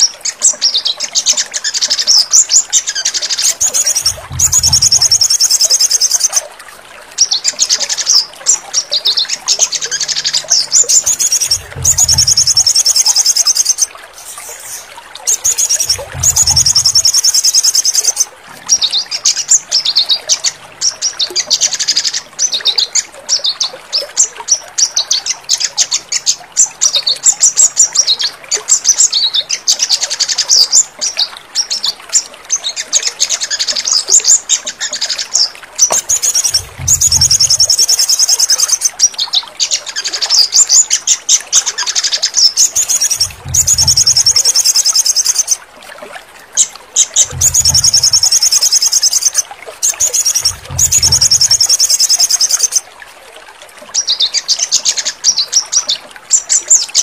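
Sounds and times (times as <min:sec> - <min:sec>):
sunbird chirps and trills: 0:01.6 - 0:06.4, 0:09.1 - 0:19.2, 0:35.9 - 0:39.0, 0:41.8 - 0:45.6, 0:47.0 - 0:52.8
low rumbles: 0:03.9 - 0:05.1, 0:11.4 - 0:12.6, 0:15.8 - 0:17.0, 0:36.4 - 0:37.6, 0:43.2 - 0:44.4, 0:47.2 - 0:48.3, 0:50.4 - 0:51.6.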